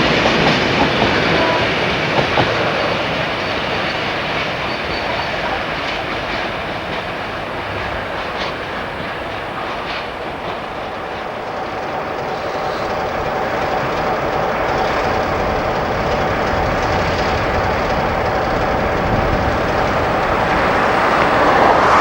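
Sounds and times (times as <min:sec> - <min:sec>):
train wheels rumbling on rails: 0:00.0 - 0:22.0
steady tone: 0:16.8 - 0:22.0.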